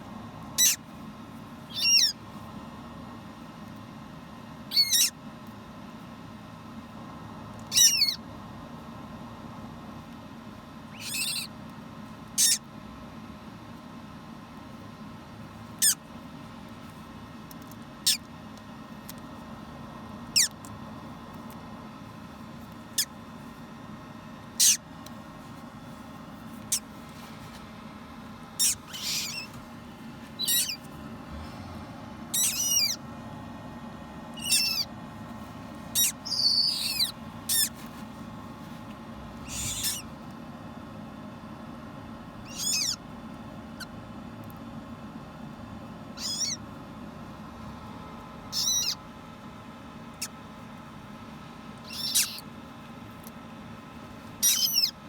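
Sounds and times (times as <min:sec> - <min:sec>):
steady low hum: 0:00.0 - 0:55.0
parrot chick peeping: 0:00.5 - 0:00.9, 0:01.7 - 0:02.2, 0:04.7 - 0:05.2, 0:07.6 - 0:08.2, 0:10.9 - 0:11.6, 0:12.3 - 0:12.6, 0:15.8 - 0:16.0, 0:18.0 - 0:18.3, 0:20.3 - 0:20.7, 0:22.8 - 0:23.2, 0:24.5 - 0:24.9, 0:26.6 - 0:26.9, 0:28.4 - 0:29.6, 0:30.3 - 0:30.9, 0:32.2 - 0:33.0, 0:34.3 - 0:35.0, 0:35.9 - 0:37.8, 0:39.4 - 0:40.2, 0:42.4 - 0:43.0, 0:46.1 - 0:46.7, 0:48.5 - 0:49.1, 0:50.1 - 0:50.4, 0:51.8 - 0:52.5, 0:54.4 - 0:55.0.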